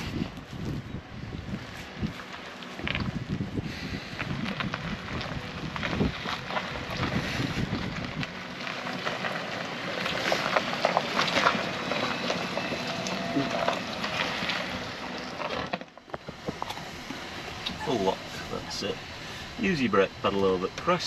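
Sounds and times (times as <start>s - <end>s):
wind buffeting microphone: 0.0s - 12.7s
crackles and clicks: 1.6s - 18.9s.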